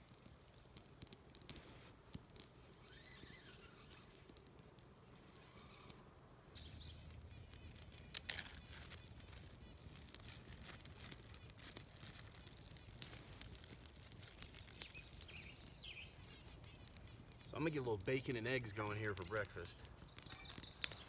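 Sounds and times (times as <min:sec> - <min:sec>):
campfire crackling and popping: 0:00.0 - 0:21.0
bird chirping: 0:06.5 - 0:21.0.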